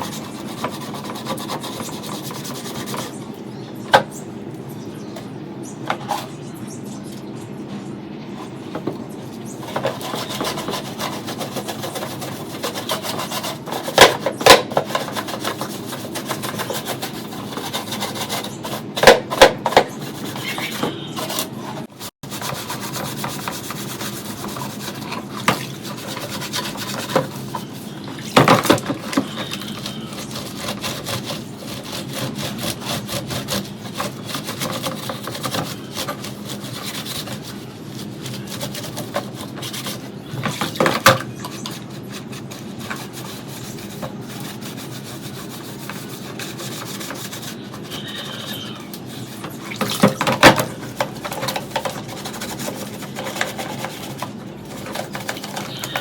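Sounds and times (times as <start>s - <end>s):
rubbing abrasion strokes on metal: 0.0s - 3.2s, 9.6s - 19.1s, 19.7s - 40.9s, 41.5s - 56.0s.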